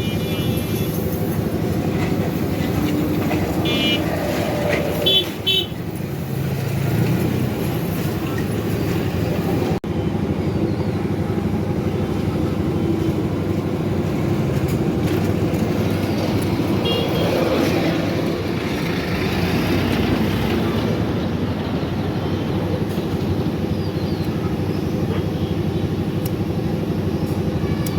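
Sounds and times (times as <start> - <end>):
road traffic noise: 0.0 - 27.9.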